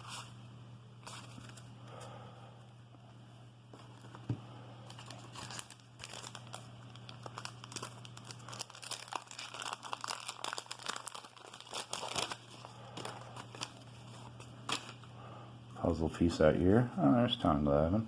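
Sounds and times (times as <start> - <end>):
low steady hum: 0.0 - 18.0
paper wrapper crinkling: 3.7 - 15.1.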